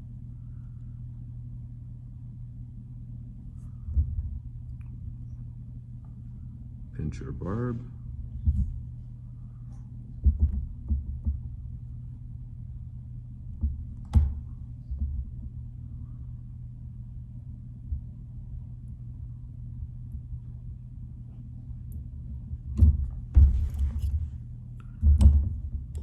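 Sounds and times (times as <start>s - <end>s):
steady low hum: 0.0s - 26.0s
dull thumps: 8.3s - 9.0s, 10.2s - 11.8s, 22.7s - 24.4s.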